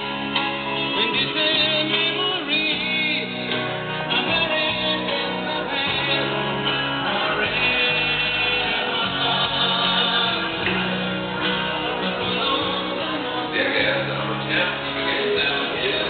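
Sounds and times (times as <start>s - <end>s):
song with singing: 0.0s - 16.0s.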